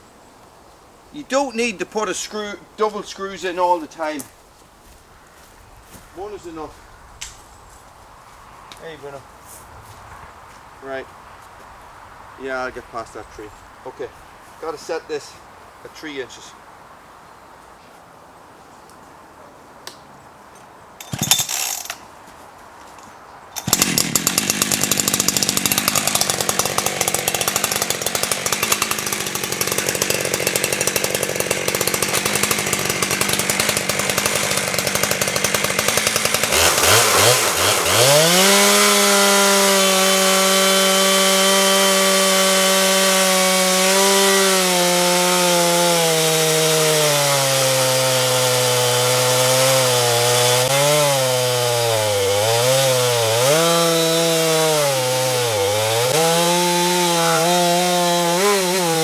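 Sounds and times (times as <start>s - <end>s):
chainsaw cutting through log: 21.0s - 22.0s, 23.6s - 59.0s
chainsaw engine running: 21.0s - 22.0s, 23.6s - 59.0s.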